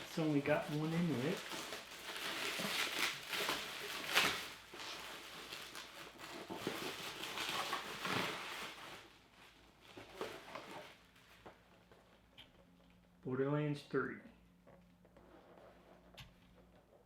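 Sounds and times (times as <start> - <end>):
hands rustling packaging: 0.0 - 12.3.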